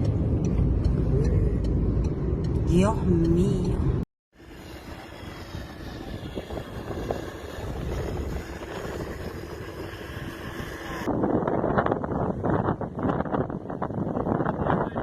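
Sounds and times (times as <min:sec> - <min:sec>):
strong wind buffeting microphone: 0:04.7 - 0:15.0.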